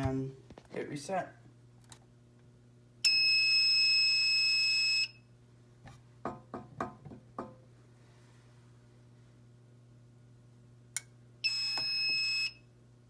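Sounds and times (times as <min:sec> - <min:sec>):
fire alarm electronic tone: 0:03.0 - 0:05.2, 0:11.4 - 0:12.7.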